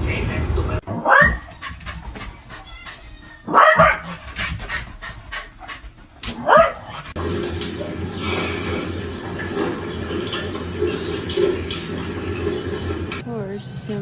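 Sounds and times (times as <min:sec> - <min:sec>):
dog yelps: 0:00.9 - 0:04.2, 0:06.4 - 0:07.0
dog panting: 0:01.2 - 0:07.2.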